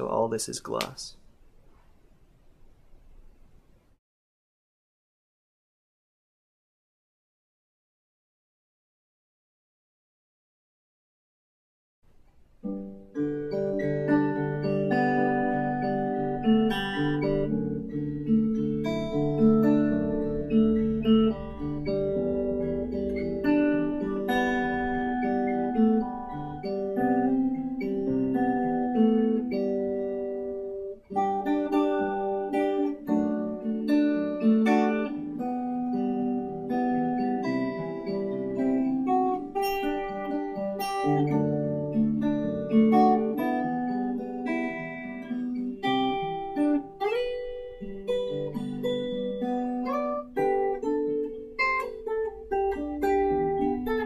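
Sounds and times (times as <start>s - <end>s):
acoustic guitar picked notes and chords: 12.6s - 54.0s.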